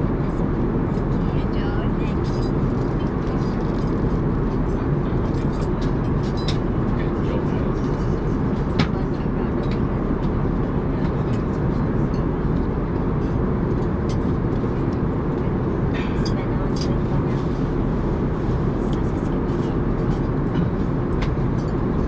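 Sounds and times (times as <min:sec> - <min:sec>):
airliner cabin engine hum: 0:00.0 - 0:22.0.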